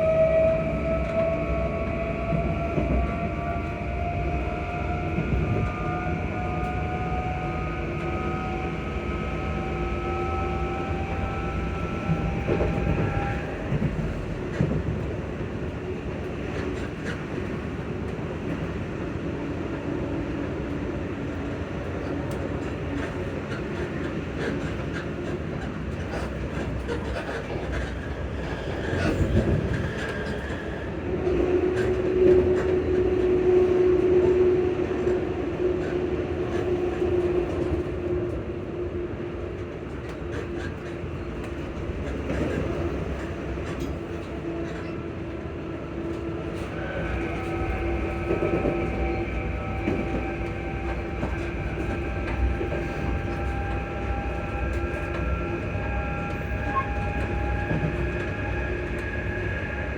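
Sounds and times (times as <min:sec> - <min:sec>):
train traction motors whining: 0:00.0 - 0:19.0, 0:39.9 - 0:59.9
train running rumble: 0:00.0 - 0:59.9.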